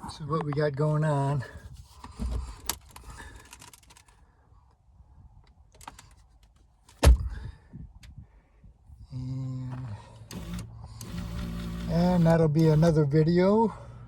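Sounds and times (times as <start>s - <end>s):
light clicking and handling: 1.8s - 4.2s, 5.4s - 7.0s.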